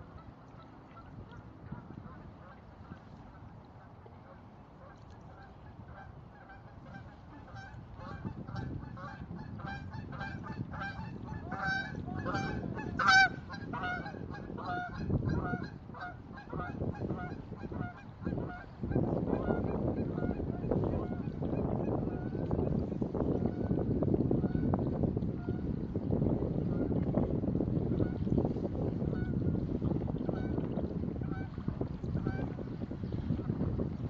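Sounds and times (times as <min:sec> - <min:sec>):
geese honking: 0:09.0 - 0:18.0.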